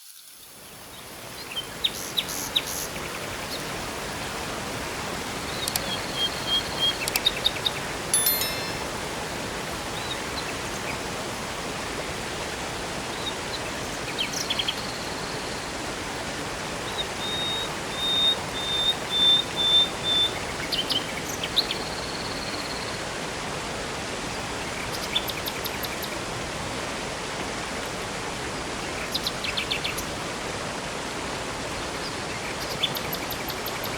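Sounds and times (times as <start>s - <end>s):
bird short evenly spaced notes: 8.2s - 9.4s.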